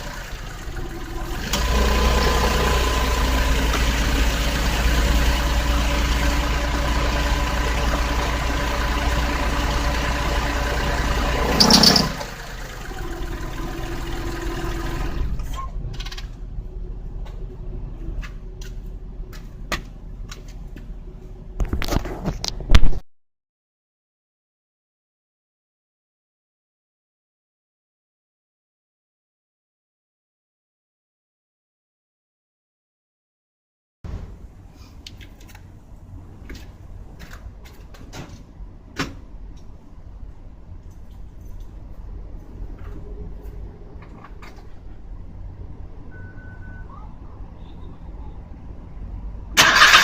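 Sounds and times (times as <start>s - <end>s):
engine knocks and clatter: 0.0s - 22.7s, 40.7s - 45.1s, 49.6s - 50.0s
low steady engine hum: 0.0s - 22.7s, 34.1s - 50.0s.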